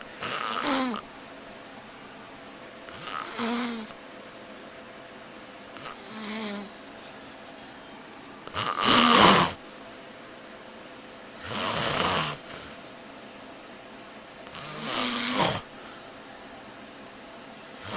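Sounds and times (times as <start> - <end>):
loud rasping snores: 0.2 - 1.0, 2.9 - 4.0, 5.8 - 6.7, 8.5 - 9.6, 11.4 - 12.5, 14.5 - 15.7.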